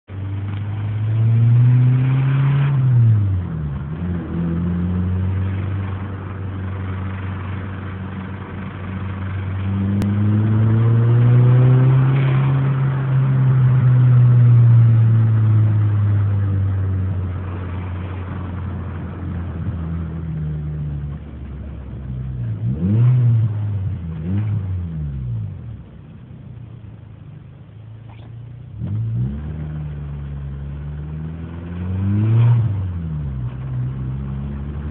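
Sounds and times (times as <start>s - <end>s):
engine idling and revving: 0.1s - 34.9s.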